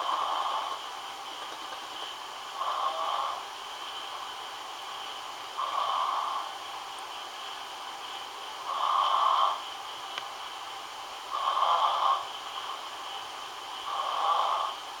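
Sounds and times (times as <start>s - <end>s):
person snoring: 0.0s - 0.8s, 2.6s - 3.4s, 5.6s - 6.6s, 8.6s - 9.6s, 11.3s - 12.8s, 13.8s - 15.0s
faint steady hiss: 0.0s - 15.0s.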